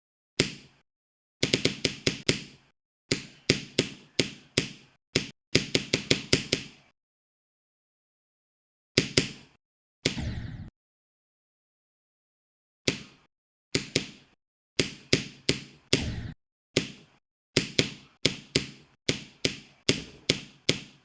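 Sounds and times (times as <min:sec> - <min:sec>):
sharp clicking taps: 0:01.4 - 0:06.8, 0:09.0 - 0:09.6, 0:13.8 - 0:16.0, 0:16.8 - 0:21.0.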